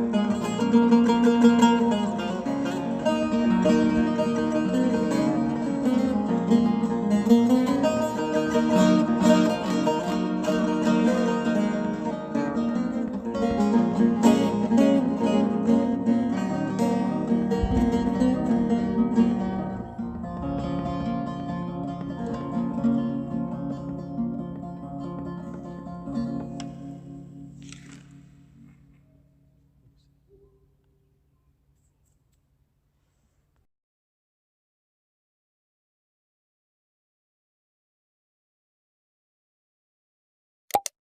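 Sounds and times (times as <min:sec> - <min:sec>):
plucked long-necked lute: 0:00.0 - 0:29.4.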